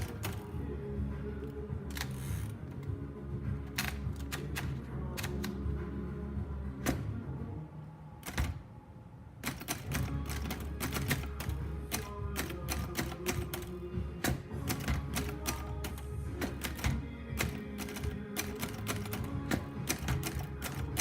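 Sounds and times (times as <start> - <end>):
typewriter keys thunking: 0.0 - 0.5, 8.2 - 8.6, 9.4 - 21.0
background music: 0.0 - 21.0.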